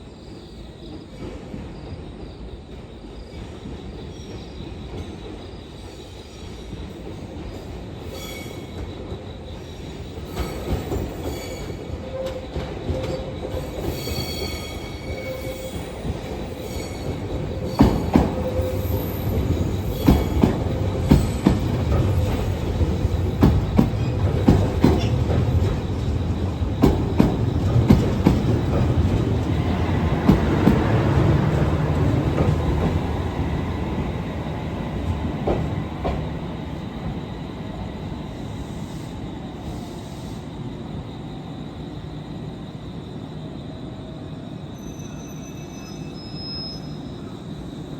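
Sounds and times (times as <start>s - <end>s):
passenger train approaching: 0.0s - 47.9s
high-pitched wheel squeal: 10.3s - 20.5s, 44.8s - 47.1s
wheels clacking over rail joints: 16.2s - 33.0s.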